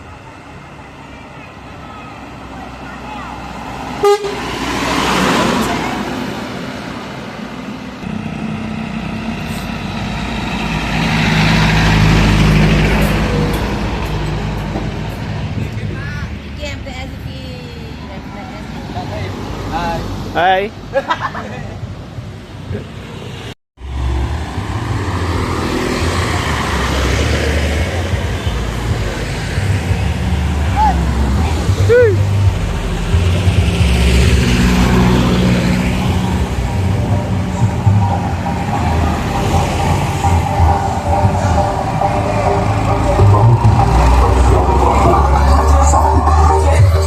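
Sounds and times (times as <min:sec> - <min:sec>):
heavy vehicle engine running: 0:00.0 - 0:18.8, 0:23.8 - 0:47.0
street parade noise: 0:24.6 - 0:47.0.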